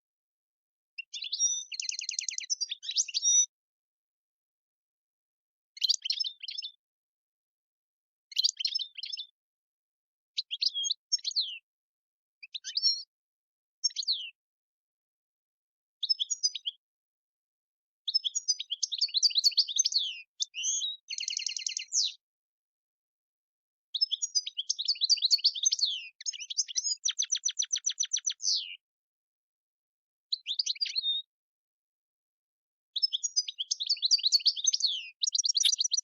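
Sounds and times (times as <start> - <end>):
goldfinch singing: 1.0 - 3.5, 5.8 - 6.8, 18.1 - 22.2, 24.0 - 28.8, 30.3 - 31.2, 33.0 - 36.0.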